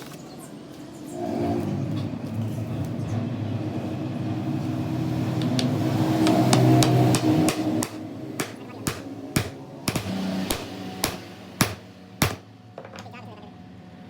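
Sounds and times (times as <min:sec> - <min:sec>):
sharp metal taps: 0:05.4 - 0:12.5.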